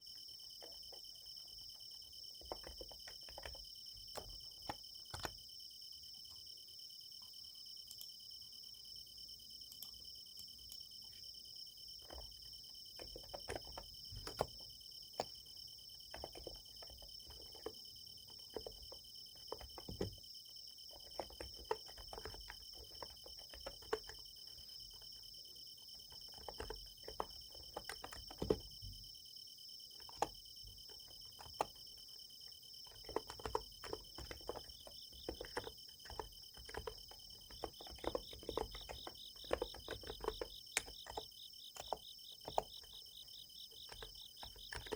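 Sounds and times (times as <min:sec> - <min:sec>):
insects chirring: 0:00.0 - 0:44.9
soft keyboard keystrokes: 0:02.4 - 0:05.4, 0:12.0 - 0:20.2, 0:20.9 - 0:25.4, 0:26.0 - 0:29.0, 0:30.0 - 0:32.1, 0:32.8 - 0:44.9.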